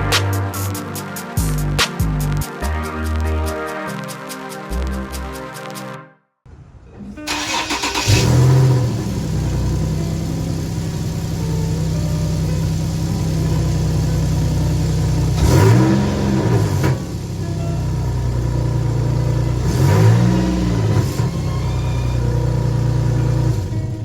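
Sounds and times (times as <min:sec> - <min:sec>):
car engine starting and idling: 0:07.2 - 0:24.0
engine revving: 0:07.3 - 0:24.0.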